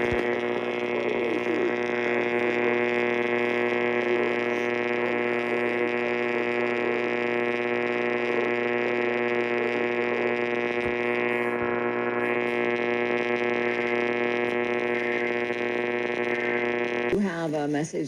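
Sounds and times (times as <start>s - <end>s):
loud electronic buzz: 0.0s - 17.7s.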